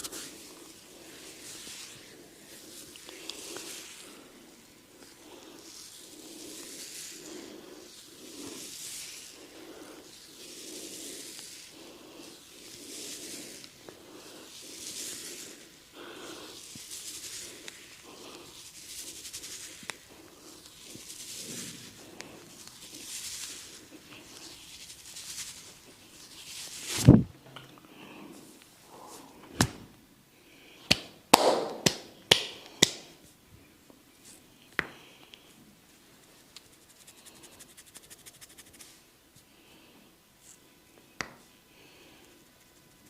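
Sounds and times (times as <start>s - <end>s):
hands rubbing oiled skin: 0.0s - 27.2s, 36.4s - 39.0s
loud smack: 30.9s - 32.5s.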